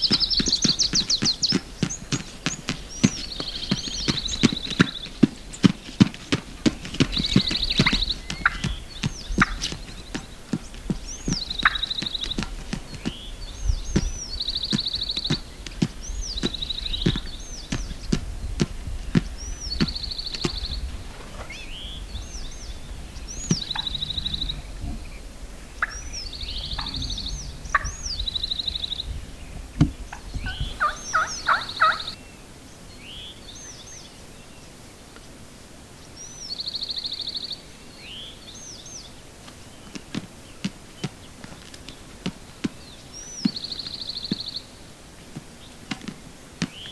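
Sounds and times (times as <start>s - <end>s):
rustling: 0.0s - 32.2s
high bird calls and trills: 0.0s - 34.7s, 36.1s - 44.8s
wild turkey gobbling: 11.6s - 11.9s, 25.8s - 26.0s, 30.1s - 32.2s.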